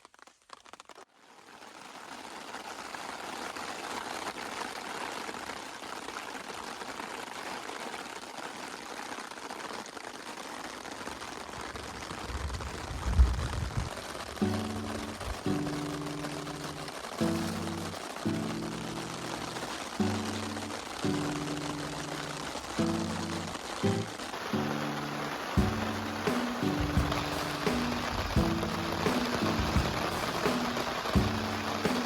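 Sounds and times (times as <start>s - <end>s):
water rushing: 14.0s - 32.0s
music: 14.4s - 32.0s
low thumps: 25.6s - 32.0s.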